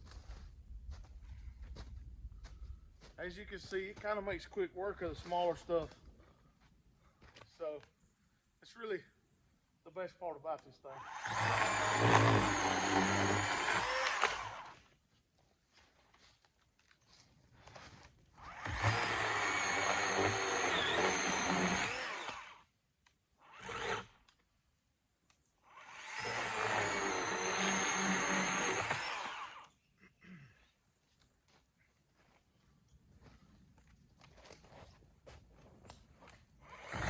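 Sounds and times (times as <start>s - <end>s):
electric chainsaw cutting limbs: 10.9s - 14.9s, 18.4s - 22.7s, 23.4s - 24.4s, 25.6s - 29.7s, 36.6s - 37.0s.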